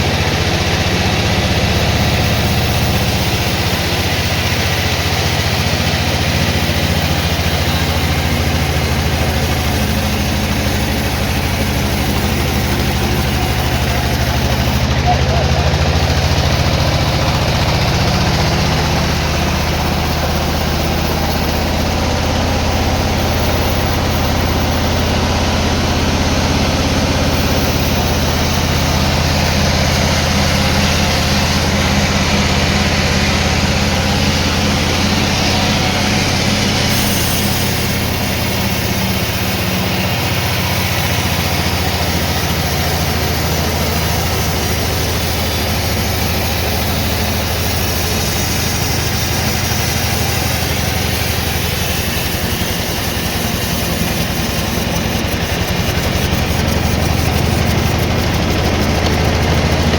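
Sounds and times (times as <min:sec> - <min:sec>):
sawmill machinery droning: 0:00.0 - 0:59.9.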